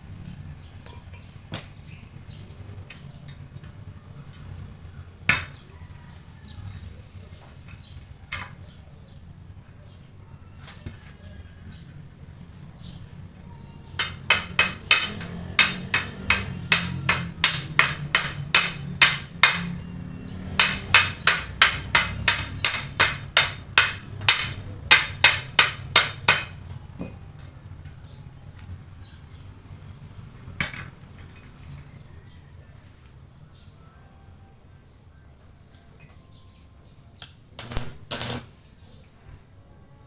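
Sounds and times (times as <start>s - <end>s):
hammer striking metal: 14.0s - 26.6s, 37.6s - 38.5s.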